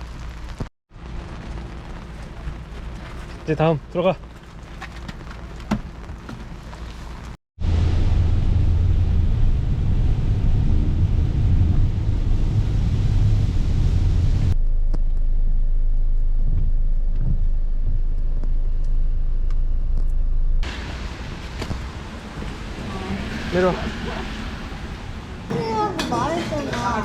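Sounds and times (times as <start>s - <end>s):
low hum: 0.9s - 25.5s
loud low rumble: 7.6s - 26.4s.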